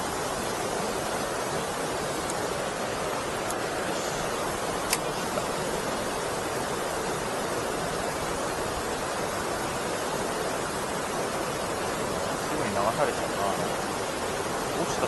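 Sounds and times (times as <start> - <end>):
river water rushing over weir: 0.0 - 15.0
sharp click: 4.8 - 5.1.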